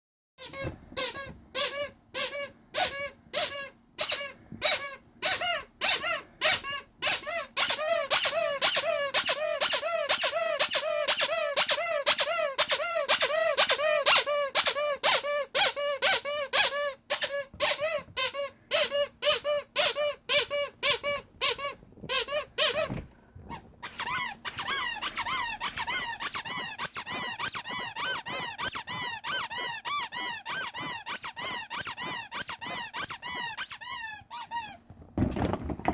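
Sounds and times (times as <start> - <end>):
rubber squeak toy squeaking: 0.4 - 34.8
higher-pitched squeaking: 23.5 - 34.8.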